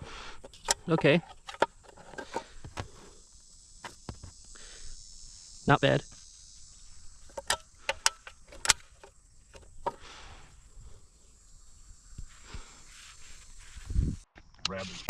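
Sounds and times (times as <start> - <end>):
crickets chirring: 0.0 - 15.0
sharp metallic clicks and taps: 7.3 - 10.0.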